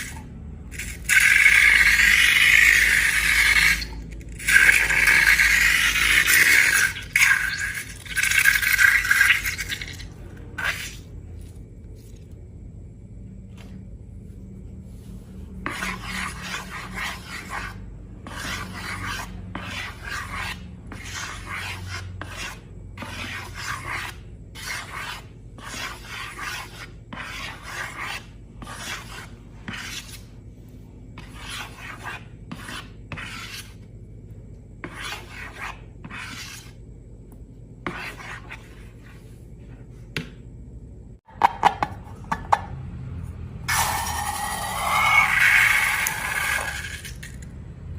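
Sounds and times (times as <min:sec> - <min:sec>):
rasping scraping strokes: 0:15.0 - 0:30.4, 0:31.2 - 0:33.8, 0:43.7 - 0:47.2.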